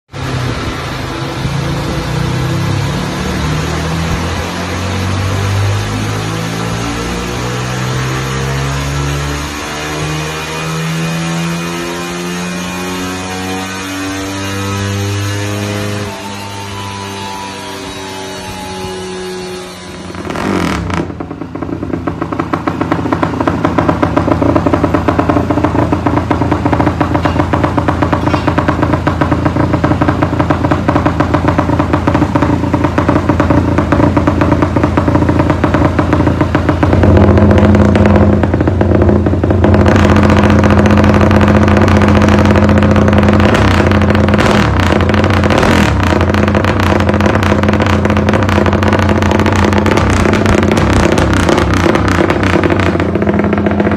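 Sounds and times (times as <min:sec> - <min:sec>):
motorcycle engine rumbling idle: 0:20.2 - 0:53.9.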